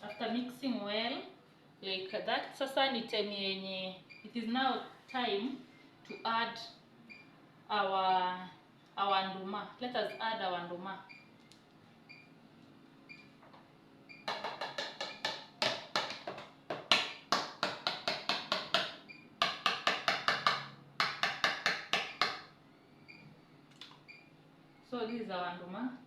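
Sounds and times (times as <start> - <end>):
utensil knocking against container: 14.3 - 22.4.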